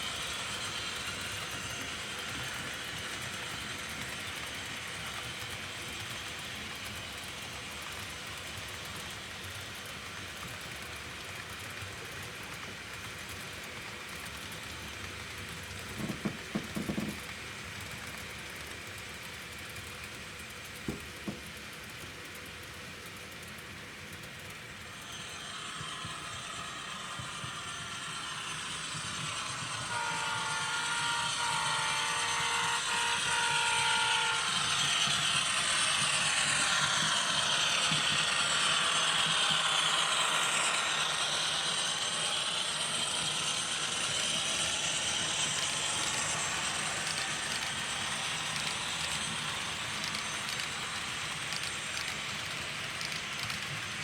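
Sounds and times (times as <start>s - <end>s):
train running past: 0.0s - 54.0s
train horn tone: 29.7s - 34.8s.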